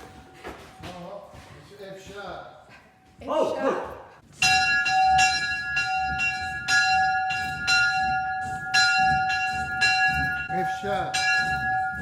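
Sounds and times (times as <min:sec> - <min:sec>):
church bell ringing: 0:04.4 - 0:12.0.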